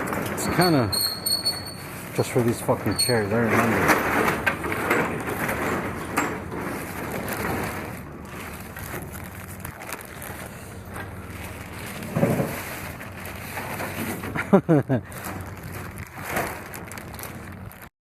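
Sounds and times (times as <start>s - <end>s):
truck engine and road noise: 0.0s - 17.9s.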